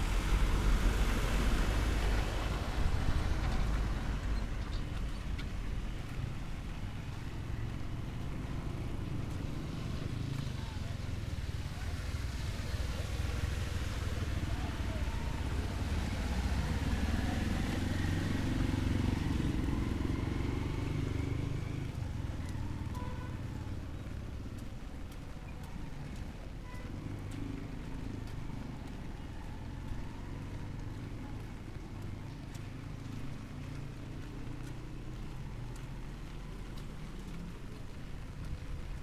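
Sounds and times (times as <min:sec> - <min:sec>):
vehicle engine passing: 0:12.2 - 0:22.3.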